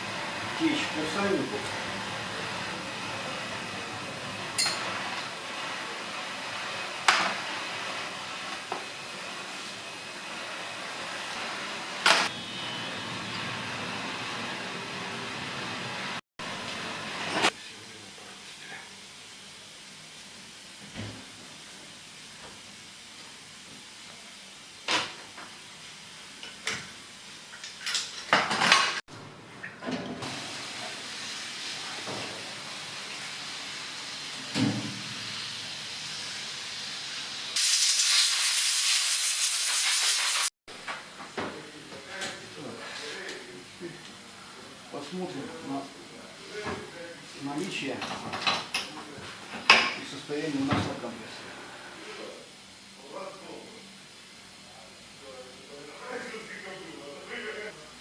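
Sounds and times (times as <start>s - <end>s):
metal tools clinking: 4.6s - 4.9s
steady hiss: 30.3s - 40.5s.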